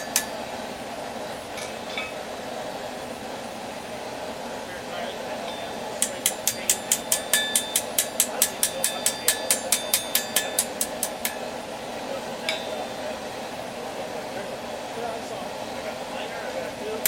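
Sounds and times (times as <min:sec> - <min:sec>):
steady hum: 0:00.0 - 0:17.0
hammer ringing on anvil: 0:05.4 - 0:11.5, 0:12.4 - 0:13.1.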